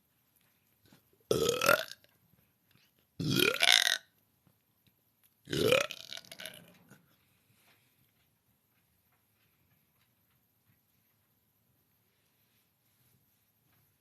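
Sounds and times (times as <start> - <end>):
person burping loudly: 1.3 - 2.1, 3.2 - 4.1, 5.5 - 6.7.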